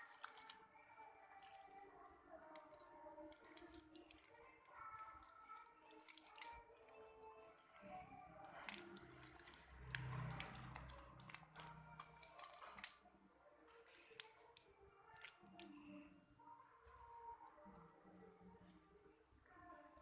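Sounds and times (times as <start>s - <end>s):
slime sticky clicks: 2.5s - 4.3s, 5.0s - 7.9s, 8.6s - 13.0s, 13.8s - 15.5s.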